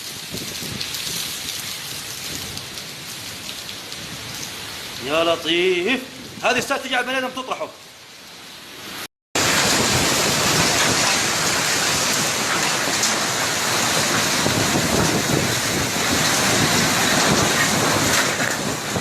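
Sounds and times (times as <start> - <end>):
hail and heavy rain pelting: 9.4 - 19.0.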